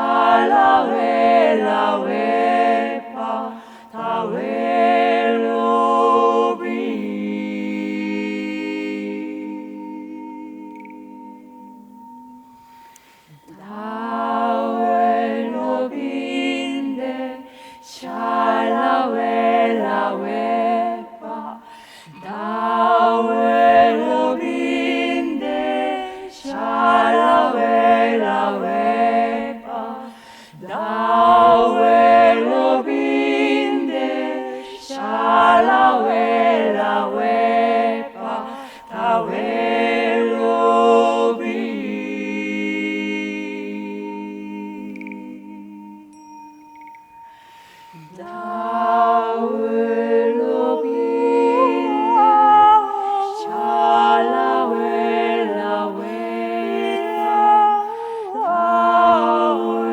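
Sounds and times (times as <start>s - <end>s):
vocal ensemble singing a cappella: 0.0s - 59.9s
singing bowl ringing: 7.6s - 21.3s, 43.9s - 49.6s.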